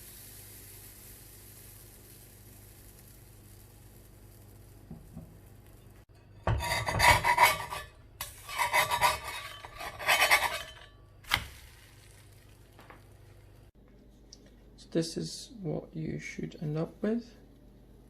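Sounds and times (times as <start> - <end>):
spatula scraping frying pan: 6.2 - 11.0.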